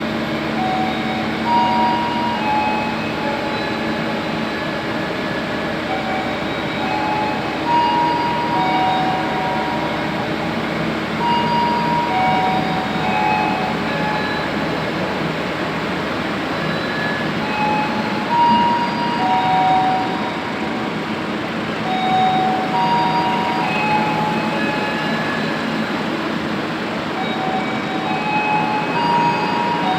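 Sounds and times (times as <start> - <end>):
diesel locomotive engine running: 0.0 - 29.9.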